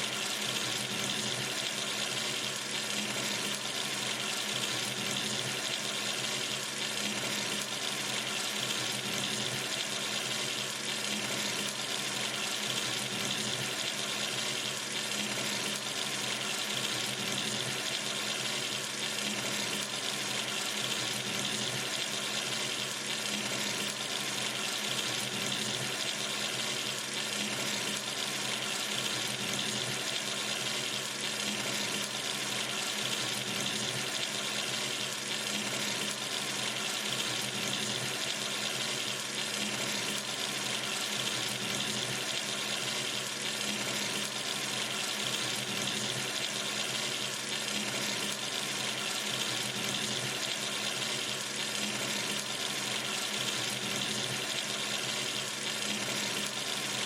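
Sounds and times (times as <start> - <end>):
tap water running into sink: 0.0 - 57.0.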